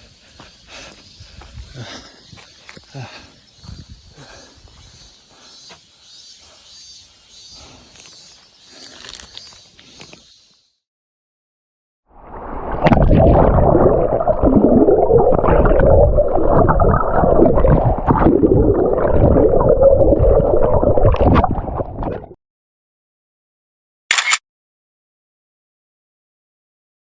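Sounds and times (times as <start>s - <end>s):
muffled underwater gurgling: 12.5s - 22.4s.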